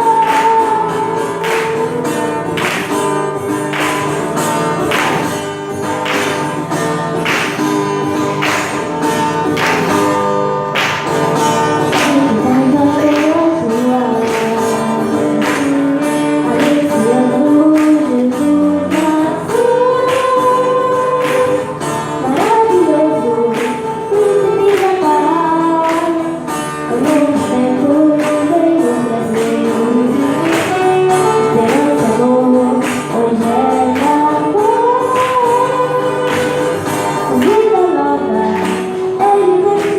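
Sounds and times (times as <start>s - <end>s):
person singing: 0.0s - 2.9s, 11.8s - 39.9s
percussion beat: 0.0s - 13.6s
instrumental accompaniment: 0.0s - 39.9s.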